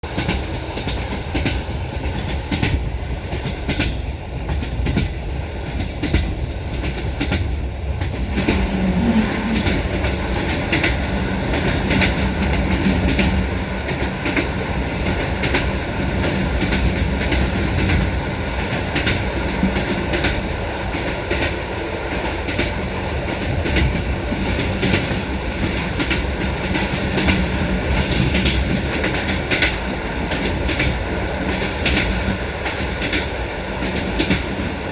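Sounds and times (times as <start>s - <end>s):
train wheels clattering: 0.0s - 34.9s.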